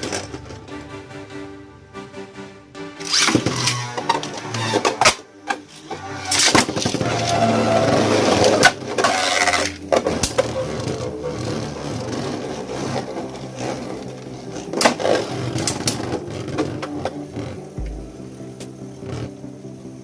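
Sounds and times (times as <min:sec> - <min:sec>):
background music: 0:00.0 - 0:20.0
spinning tops whirring and scraping: 0:03.0 - 0:17.5.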